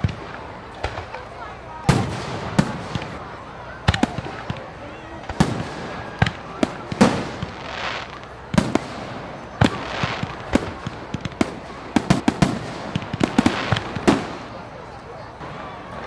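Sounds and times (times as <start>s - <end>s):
fireworks bangs with fizzing: 0.0s - 16.0s
fireworks crackling: 0.0s - 16.0s.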